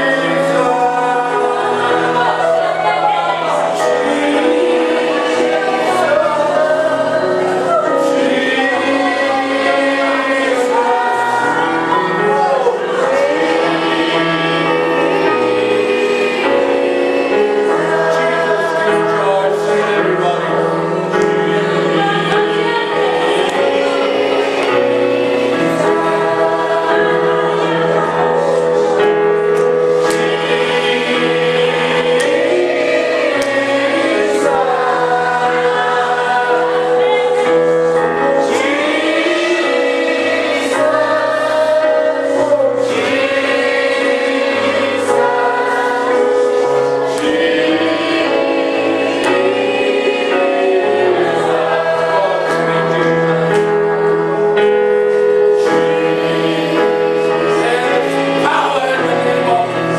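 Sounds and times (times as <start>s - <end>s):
gospel choir singing: 0.0s - 59.9s.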